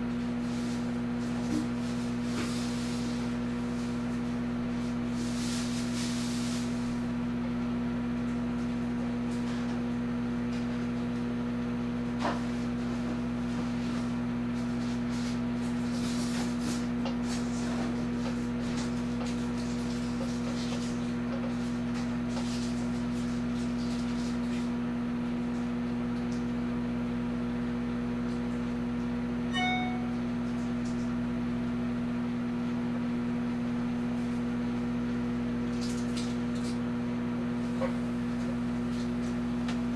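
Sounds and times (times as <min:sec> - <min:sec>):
microwave oven humming: 0:00.0 - 0:39.9
short high chirp: 0:29.5 - 0:30.2.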